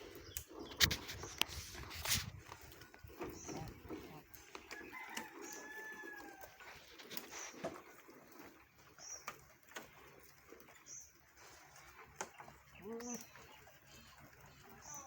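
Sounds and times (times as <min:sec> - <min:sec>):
faint rooster crowing: 0:04.6 - 0:06.8.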